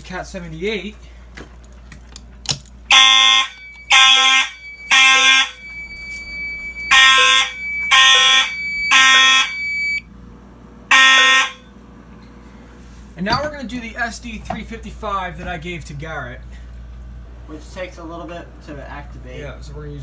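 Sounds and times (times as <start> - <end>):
thin steady high tone: 2.9 - 10.0
fire alarm horn blasts: 2.9 - 10.1, 10.9 - 11.7.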